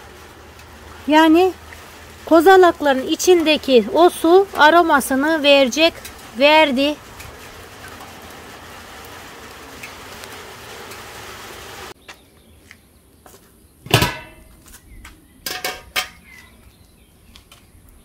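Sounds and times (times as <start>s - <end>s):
steady hiss: 5.4s - 12.0s
metal cookware clanking: 13.9s - 14.5s, 15.4s - 16.4s.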